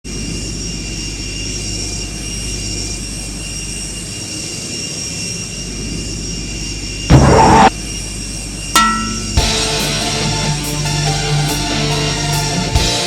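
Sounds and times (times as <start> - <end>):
jet engine rumble and whine: 0.1 - 8.8.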